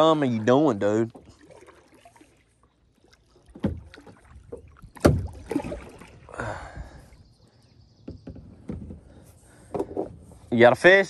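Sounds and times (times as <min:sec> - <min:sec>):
rushing water: 0:00.0 - 0:06.6
hollow knocks on kayak hull: 0:03.5 - 0:05.4, 0:08.0 - 0:09.1.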